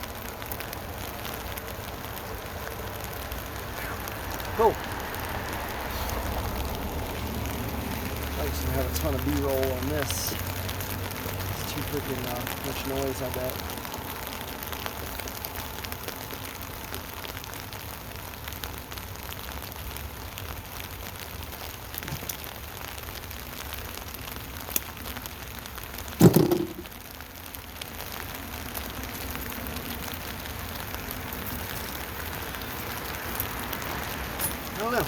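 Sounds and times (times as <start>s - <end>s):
rain on a tent canopy: 0.0s - 35.0s
brief thump: 26.2s - 26.9s.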